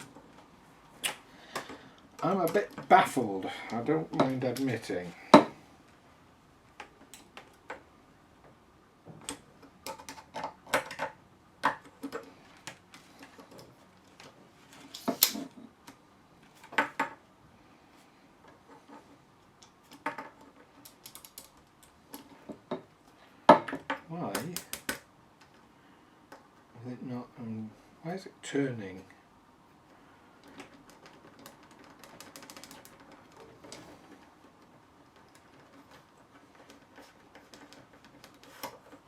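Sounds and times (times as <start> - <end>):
small plastic parts clicking: 19.6 - 22.4, 23.7 - 25.6, 30.4 - 39.0.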